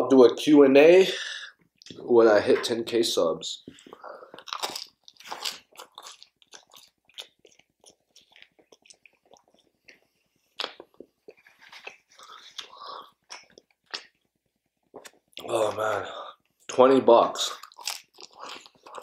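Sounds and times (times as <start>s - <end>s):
person chewing food: 3.7s - 16.7s, 17.5s - 19.0s
sharp mouth clicks: 10.6s - 10.9s.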